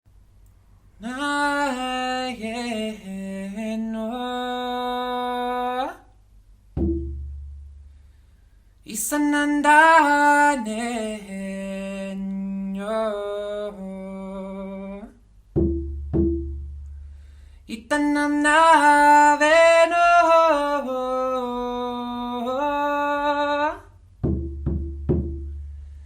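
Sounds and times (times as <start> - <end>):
person singing wordlessly: 1.0 - 6.1, 8.8 - 15.2, 17.7 - 24.0
low drum beat: 6.8 - 8.0, 15.6 - 17.1, 24.2 - 26.0.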